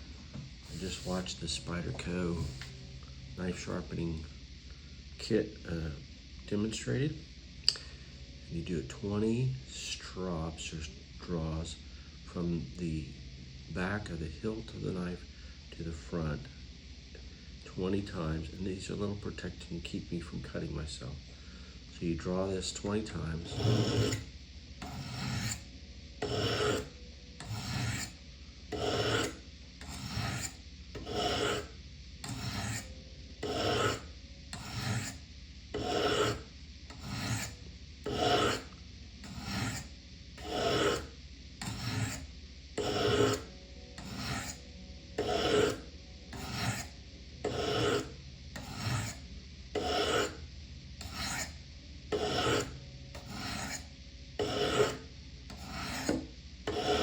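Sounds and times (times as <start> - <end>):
knife blade on ceramic rods: 22.8 - 24.2, 24.8 - 25.6, 26.2 - 35.2, 35.8 - 42.2, 42.8 - 44.6, 45.2 - 49.2, 49.8 - 50.4, 51.0 - 53.8, 54.4 - 57.0.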